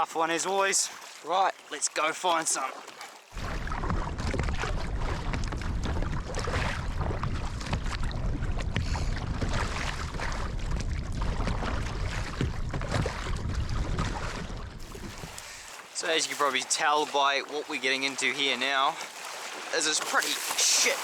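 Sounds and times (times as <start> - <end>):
sea water splashing: 0.0 - 21.0
wind buffeting microphone: 3.4 - 15.8.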